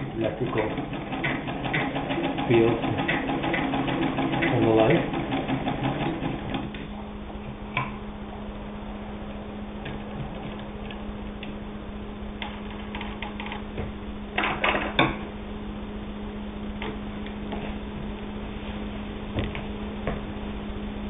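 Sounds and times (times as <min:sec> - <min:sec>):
sewing machine clatter: 0:00.4 - 0:06.8
low hum: 0:06.6 - 0:21.0.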